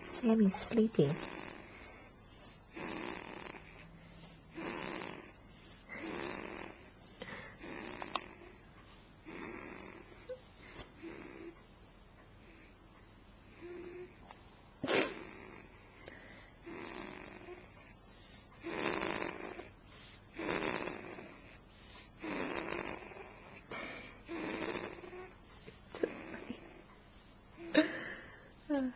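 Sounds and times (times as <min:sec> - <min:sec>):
person snoring: 0:00.0 - 0:02.0, 0:02.7 - 0:03.9, 0:04.5 - 0:08.6, 0:09.2 - 0:10.3, 0:11.0 - 0:11.5, 0:14.9 - 0:17.7, 0:18.6 - 0:19.7, 0:20.3 - 0:21.6, 0:22.2 - 0:25.3, 0:26.0 - 0:26.8
sharp snort: 0:20.4 - 0:21.4, 0:22.2 - 0:25.2.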